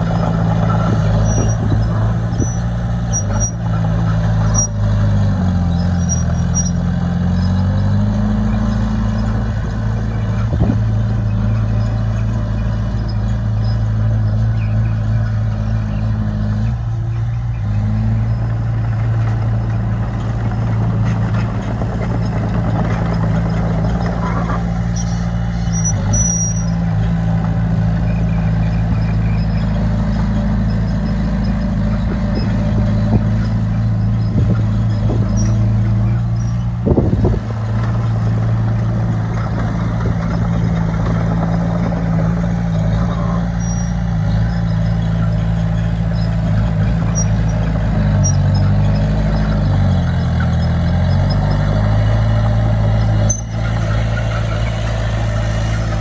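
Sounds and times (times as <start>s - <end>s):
bulldozer diesel engine running: 0.0s - 56.0s
faint high squeaks: 0.1s - 7.7s, 23.4s - 27.2s, 28.1s - 36.7s, 42.7s - 55.8s.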